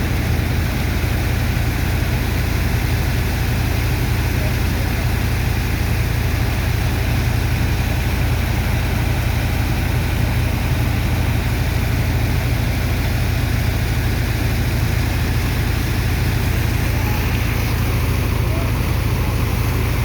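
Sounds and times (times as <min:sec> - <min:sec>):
engine deep drone: 0:00.0 - 0:20.0
water pump hiss: 0:13.3 - 0:20.0.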